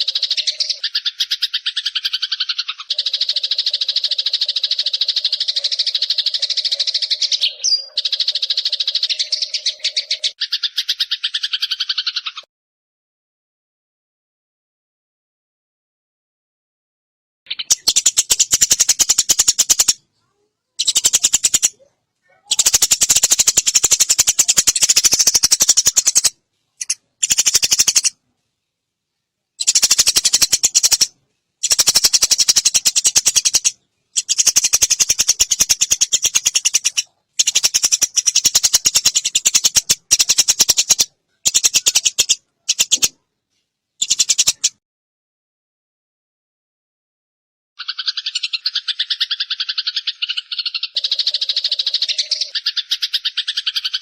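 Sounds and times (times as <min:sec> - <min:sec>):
sparrow chattering rattles: 0:00.0 - 0:12.4, 0:17.5 - 0:20.0, 0:20.8 - 0:28.2, 0:29.6 - 0:43.2, 0:44.0 - 0:44.8, 0:47.8 - 0:54.0.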